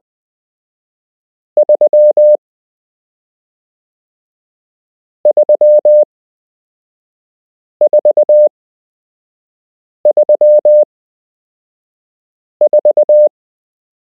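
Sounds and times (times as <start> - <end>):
morse code tone: 1.6 - 2.4, 5.3 - 6.0, 7.9 - 8.5, 10.1 - 10.8, 12.7 - 13.3.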